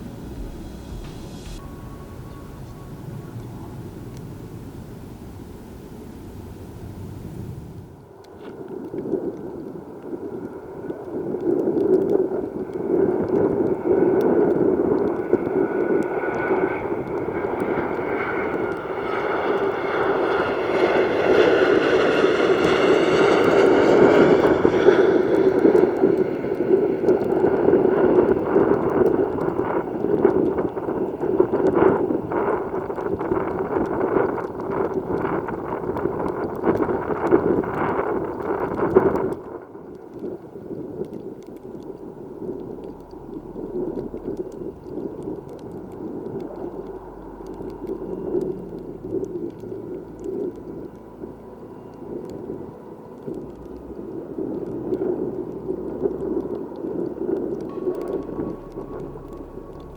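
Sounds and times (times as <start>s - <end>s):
jet engine roar: 0.0s - 8.0s, 11.2s - 38.8s
high fan whine: 0.0s - 8.2s, 12.3s - 39.1s.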